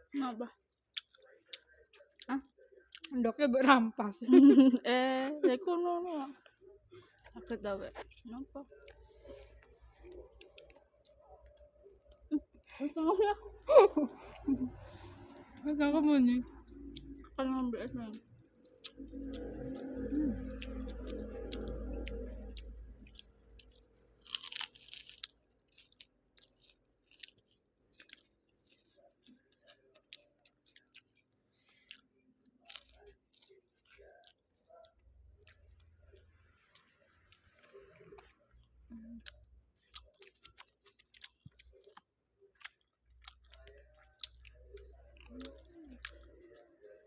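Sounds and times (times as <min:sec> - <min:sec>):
person chewing crunchy food: 0:00.9 - 0:03.1, 0:08.0 - 0:12.6, 0:18.1 - 0:46.6.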